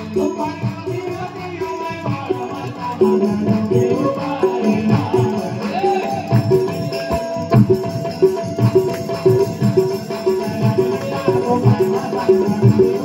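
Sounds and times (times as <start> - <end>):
jingling shaken percussion: 0.0 - 13.0
music with quick beat: 0.0 - 13.0.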